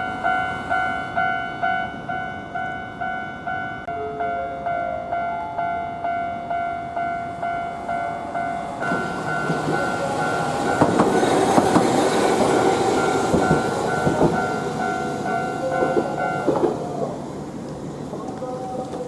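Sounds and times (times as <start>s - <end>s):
level-crossing warning bell: 0.0s - 19.0s
train wheels rushing: 7.2s - 19.0s
wheels clacking over rail joints: 7.4s - 19.0s.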